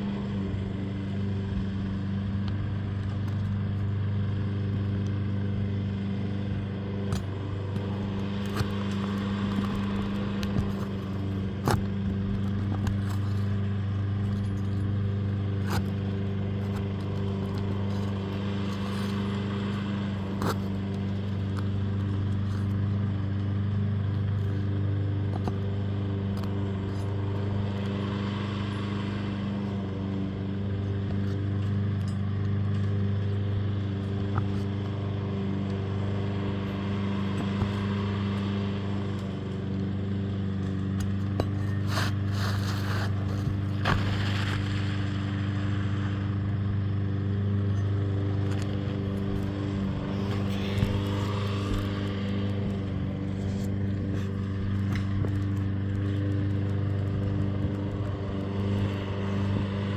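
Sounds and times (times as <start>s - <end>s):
low machine hum: 0.0s - 59.9s.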